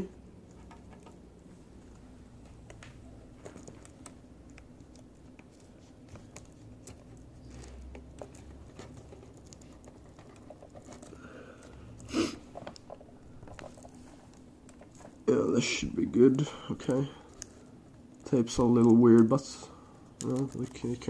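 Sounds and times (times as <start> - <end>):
hands clicking and tapping laptop parts: 1.9 - 15.2, 20.1 - 21.0.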